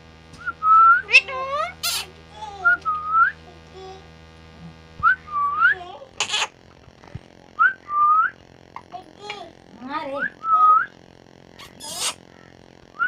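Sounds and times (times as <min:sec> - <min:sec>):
parrot whistling: 0:00.4 - 0:03.4, 0:05.0 - 0:06.5, 0:07.6 - 0:08.4, 0:10.2 - 0:11.0, 0:11.6 - 0:12.2
parrot squawk: 0:01.0 - 0:02.2, 0:06.2 - 0:06.6, 0:11.6 - 0:12.2.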